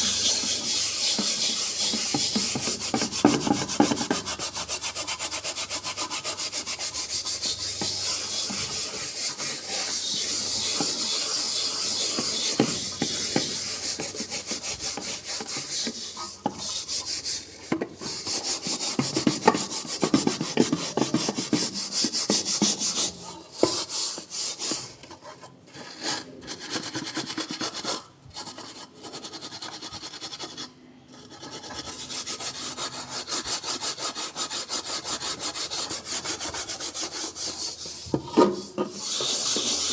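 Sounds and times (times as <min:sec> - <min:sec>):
metal scraping a wok: 0:00.0 - 0:21.8, 0:34.8 - 0:39.9.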